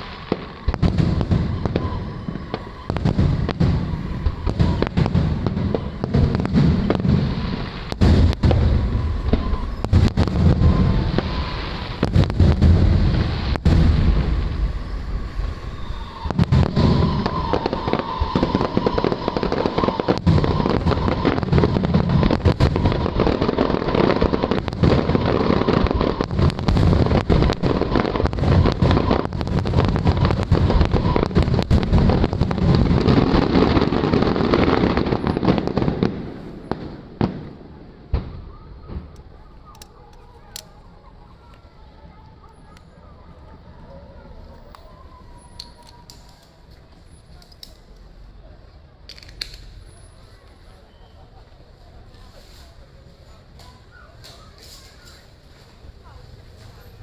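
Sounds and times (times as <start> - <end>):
fireworks booming and crackling: 0.0 - 57.0.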